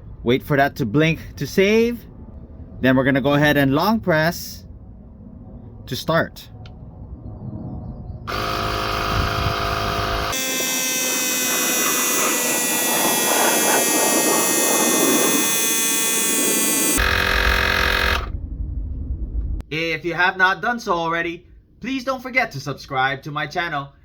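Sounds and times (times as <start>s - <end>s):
electric compressor buzzing hum: 8.3s - 18.4s.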